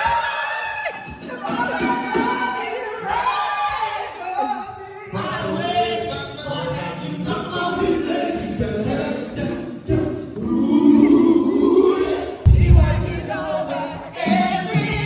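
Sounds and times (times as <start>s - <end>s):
gospel group singing in harmony: 0.0s - 15.0s.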